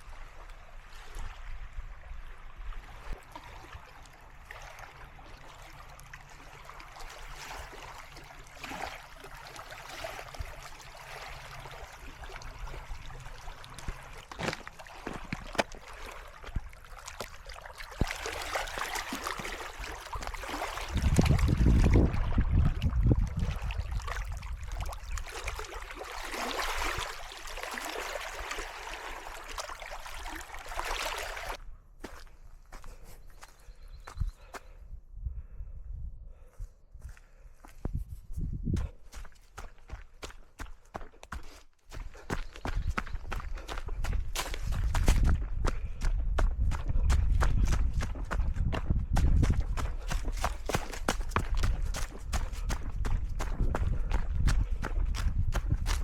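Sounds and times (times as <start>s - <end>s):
waves lapping on rocky shore: 0.0s - 22.3s, 23.6s - 31.6s
wind rumble on microphone: 19.3s - 25.7s, 31.5s - 40.3s, 41.9s - 56.0s.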